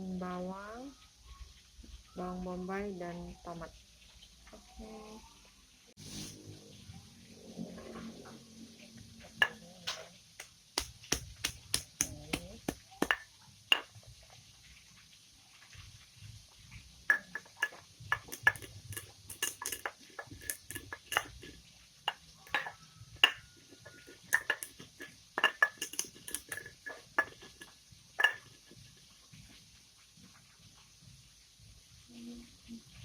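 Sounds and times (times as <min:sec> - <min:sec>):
utensils clinking against cookware: 0:09.4 - 0:10.0, 0:10.8 - 0:13.9, 0:17.1 - 0:28.9.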